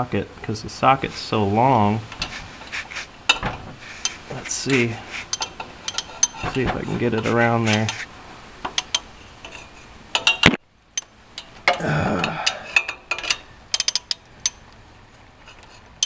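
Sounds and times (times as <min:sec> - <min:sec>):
scraping rustle: 0:00.9 - 0:10.4
metal wrench clinking and clicking: 0:05.3 - 0:06.5, 0:08.8 - 0:10.4, 0:11.0 - 0:14.6.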